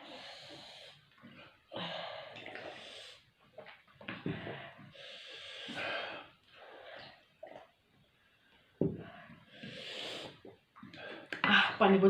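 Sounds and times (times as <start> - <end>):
person breathing hard: 4.2 - 7.2.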